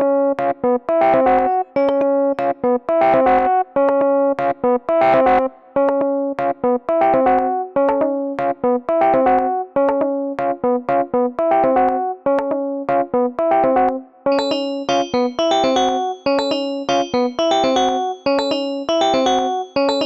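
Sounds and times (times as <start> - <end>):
choppy electric piano chords: 1.2 - 3.6, 14.3 - 20.0.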